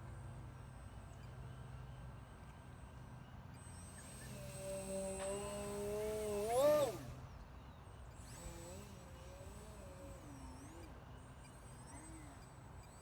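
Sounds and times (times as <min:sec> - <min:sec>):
model airplane propeller whining: 0:03.9 - 0:07.4, 0:08.2 - 0:13.0.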